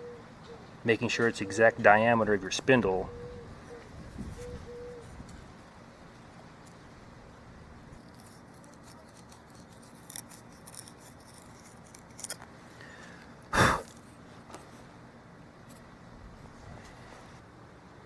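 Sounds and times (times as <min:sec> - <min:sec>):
knife cutting scrapes on wood: 0:08.0 - 0:12.5.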